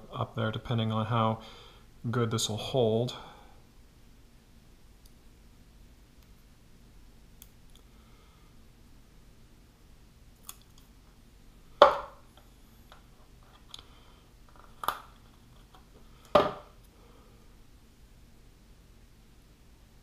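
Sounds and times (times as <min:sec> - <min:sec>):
sharp knocks on work surface: 0:11.8 - 0:12.2, 0:16.4 - 0:16.6.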